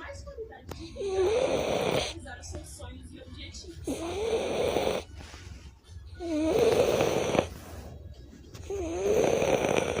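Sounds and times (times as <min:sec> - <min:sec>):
dog snoring: 0:00.9 - 0:02.2, 0:03.8 - 0:05.3, 0:06.2 - 0:08.0, 0:08.6 - 0:10.0.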